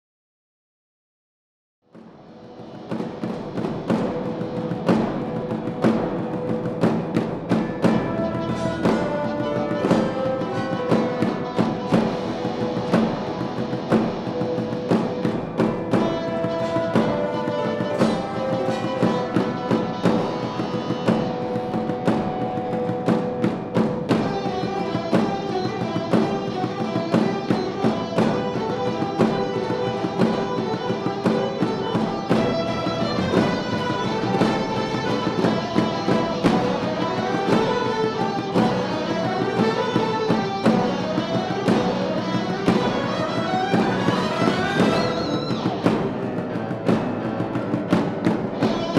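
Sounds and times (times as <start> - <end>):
percussion strikes: 1.9 - 48.9
wind ensemble playing chords: 27.9 - 45.3.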